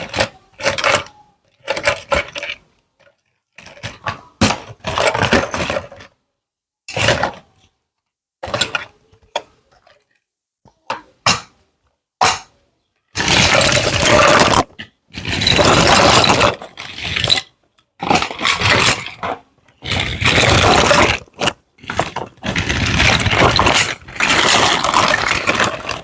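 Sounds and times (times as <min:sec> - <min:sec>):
scraping and rustling of packaging: 0:00.0 - 0:06.2, 0:13.2 - 0:26.0.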